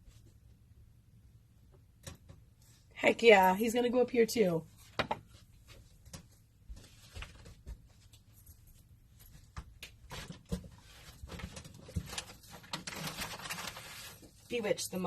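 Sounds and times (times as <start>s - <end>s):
packaging rustling: 10.1s - 14.4s.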